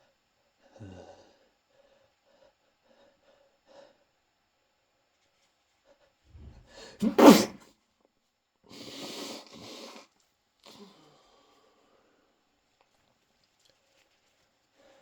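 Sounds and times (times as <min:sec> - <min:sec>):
breathy noise: 0:06.3 - 0:07.6
person sneezing: 0:06.8 - 0:07.6.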